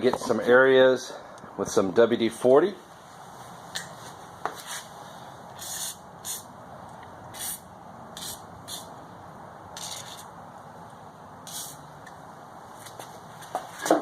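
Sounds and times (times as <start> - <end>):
aerosol spray hissing bursts: 5.6 - 6.5, 7.4 - 7.6, 8.2 - 8.9, 11.5 - 11.8.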